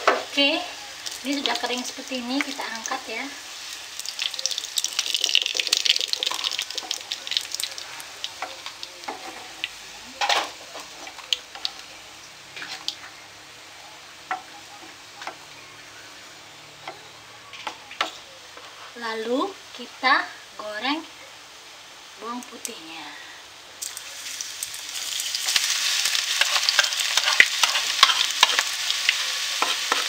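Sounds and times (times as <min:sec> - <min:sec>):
chicken skin frying in oil: 0:00.0 - 0:15.8, 0:23.8 - 0:30.0.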